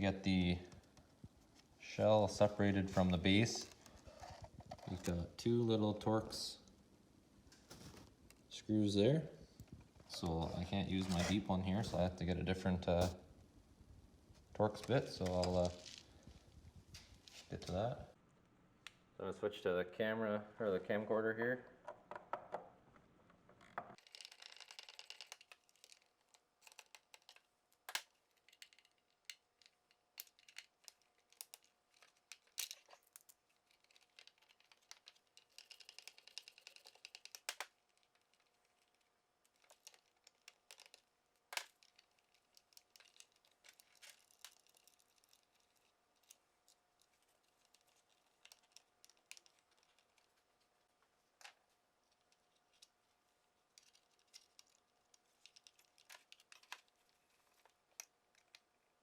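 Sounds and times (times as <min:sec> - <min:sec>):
faint steady hum: 0:00.0 - 0:59.0
tools and plastic parts rattling: 0:02.3 - 0:05.6, 0:09.6 - 0:13.2, 0:14.6 - 0:16.4, 0:23.6 - 0:58.8.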